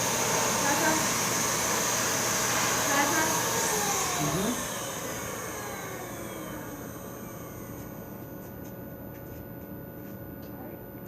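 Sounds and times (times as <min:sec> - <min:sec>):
paint sprayer motor winding down: 0:00.0 - 0:08.2.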